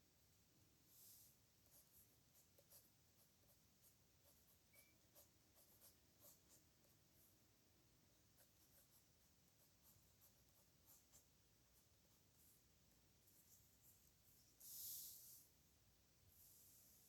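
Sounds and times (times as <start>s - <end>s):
pen scratching on paper: 1.6s - 7.3s, 8.4s - 12.6s.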